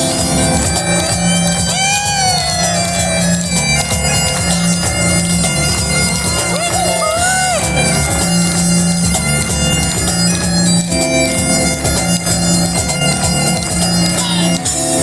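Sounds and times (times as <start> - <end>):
bagpipes playing a tune: 0.0 - 15.0
cajon: 0.0 - 15.0
piano: 0.0 - 15.0
audience whoop: 1.2 - 3.5.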